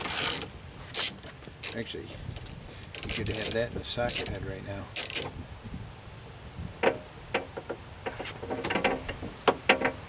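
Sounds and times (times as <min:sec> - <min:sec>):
hand tools clicking on a bolt: 0:00.0 - 0:04.4, 0:05.0 - 0:05.3.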